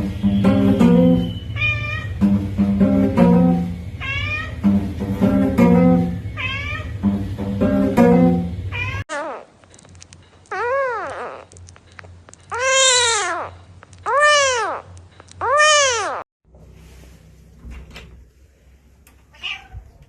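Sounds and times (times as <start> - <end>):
plucked string music: 0.0 - 9.0
cat meowing: 1.5 - 2.2, 4.0 - 4.7, 6.4 - 7.0, 8.7 - 9.6, 10.5 - 11.5, 12.5 - 16.2, 19.3 - 20.0.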